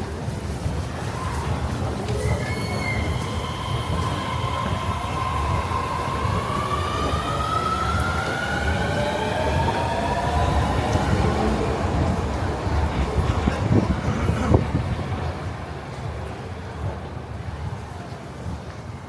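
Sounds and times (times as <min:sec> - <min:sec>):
low train rumble: 0:00.0 - 0:19.0
train whine rising in pitch: 0:01.0 - 0:14.0.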